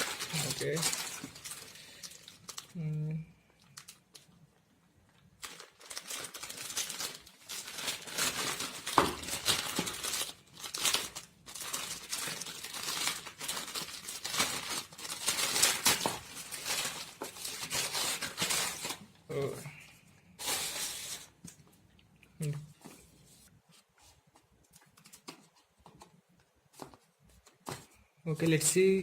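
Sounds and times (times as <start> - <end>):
packaging being torn and crumpled: 0.0 - 2.8, 3.6 - 4.4, 5.4 - 19.4.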